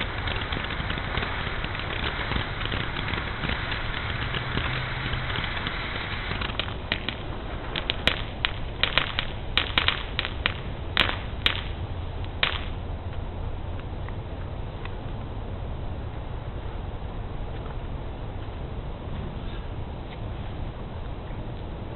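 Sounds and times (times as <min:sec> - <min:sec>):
fireworks sharp pops: 0:00.0 - 0:12.8
fireworks crackling hiss: 0:00.0 - 0:12.9.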